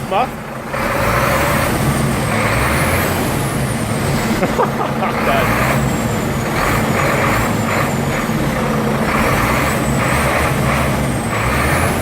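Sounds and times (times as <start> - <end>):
diesel truck engine running: 0.0 - 12.0.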